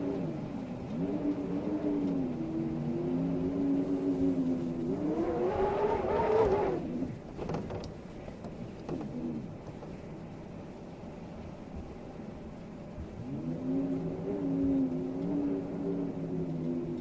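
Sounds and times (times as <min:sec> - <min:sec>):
wind howling: 0:00.0 - 0:07.4, 0:11.5 - 0:17.0
light ticks: 0:00.1 - 0:02.4, 0:16.5 - 0:17.0.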